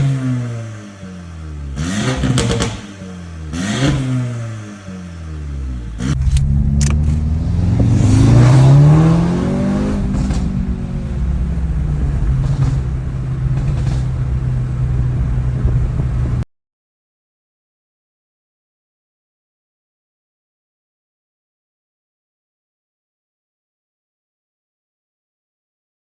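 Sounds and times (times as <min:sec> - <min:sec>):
car engine revving and idling: 0:00.0 - 0:16.4
car exhaust crackles: 0:01.6 - 0:16.4.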